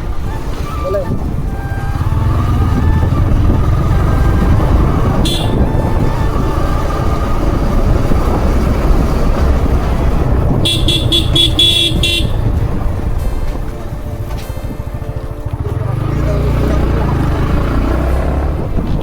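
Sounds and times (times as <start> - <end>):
wind and road noise on motorbike: 0.0 - 19.0
vehicle horn toot: 4.4 - 6.2, 10.5 - 12.7.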